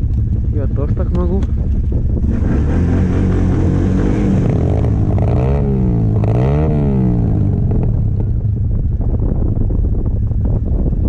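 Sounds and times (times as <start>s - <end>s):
off-road vehicle engine revving: 0.0s - 8.5s
wind rumble on microphone: 0.0s - 11.0s.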